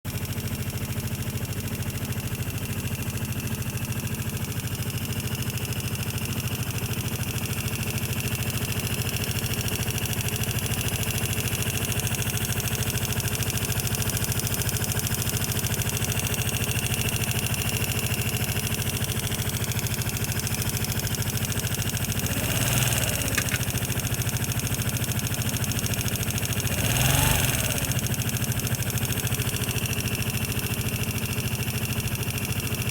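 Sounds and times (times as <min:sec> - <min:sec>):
scooter engine idling and ticking: 0:00.0 - 0:32.9.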